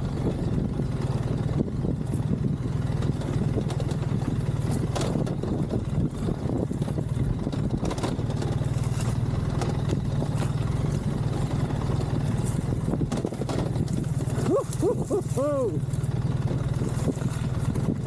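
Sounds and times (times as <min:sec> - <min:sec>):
motorcycle engine running: 0:00.0 - 0:18.0
person crying out: 0:14.4 - 0:15.9.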